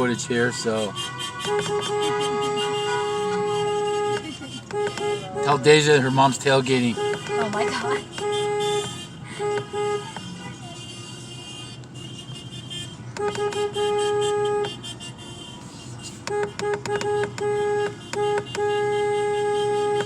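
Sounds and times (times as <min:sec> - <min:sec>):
car horn beeping: 0:00.0 - 0:20.0
low car hum: 0:00.0 - 0:20.0.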